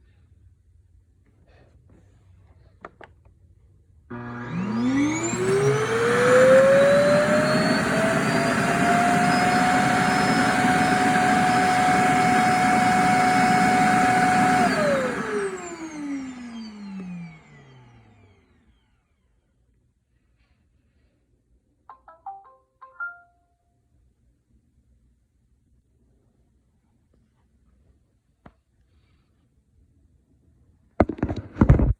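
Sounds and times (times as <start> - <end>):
suction motor whining: 4.1 - 18.3.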